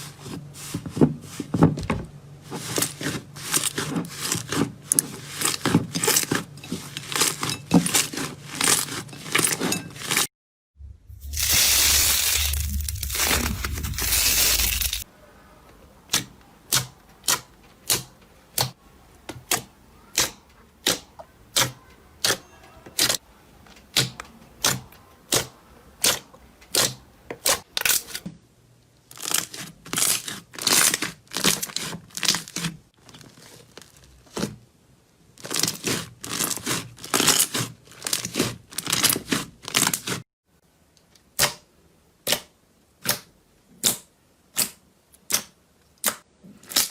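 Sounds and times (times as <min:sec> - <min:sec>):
slime crunching squeeze: 0:11.2 - 0:15.0.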